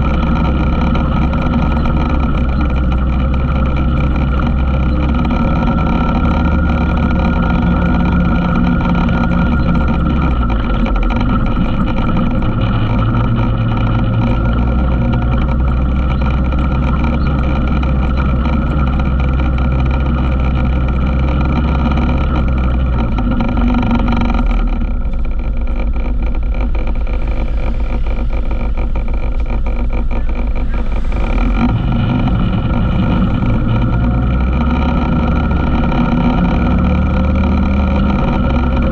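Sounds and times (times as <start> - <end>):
atv engine running: 0.0 - 38.9.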